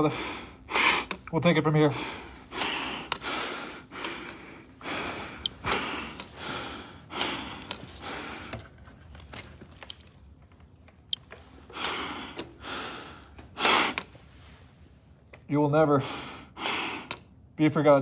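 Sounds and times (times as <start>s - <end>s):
man breathing hard and gasping: 0.0s - 8.8s, 11.6s - 14.2s, 16.0s - 17.4s.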